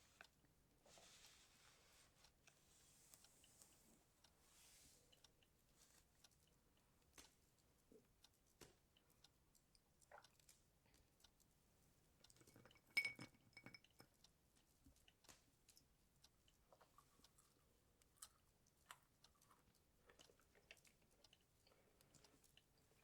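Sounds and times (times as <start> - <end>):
chewing crunches and clicks: 8.6 - 11.5, 14.9 - 23.0
crockery clink: 12.4 - 14.0.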